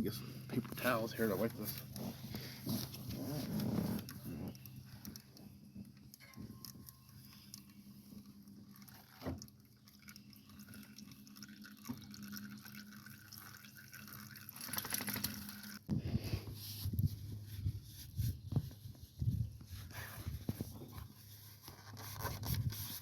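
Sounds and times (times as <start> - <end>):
oil dripping into a pan: 8.3 - 15.8.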